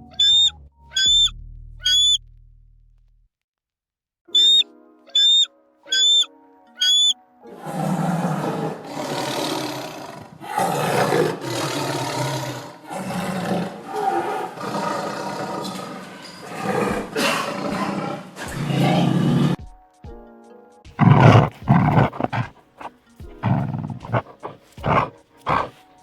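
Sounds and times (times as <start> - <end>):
short high chirps: 0.1 - 2.2, 4.4 - 4.6, 5.2 - 7.1
big cat roaring: 7.6 - 19.6, 21.0 - 25.8.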